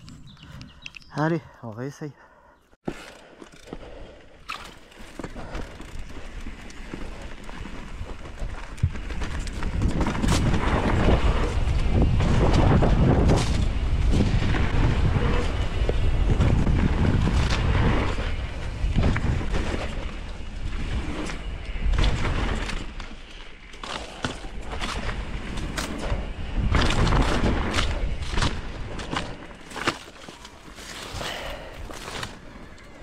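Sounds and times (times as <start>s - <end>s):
bike knocking and rattling: 2.8s - 33.0s
bike tyres rolling: 2.8s - 33.0s
wind buffeting microphone: 5.3s - 23.2s.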